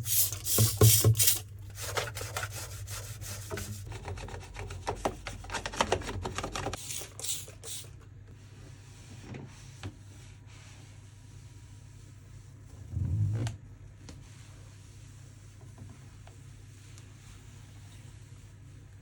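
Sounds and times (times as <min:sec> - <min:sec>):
brushing strokes: 0:00.0 - 0:03.9
scraping during cleaning: 0:00.0 - 0:04.6.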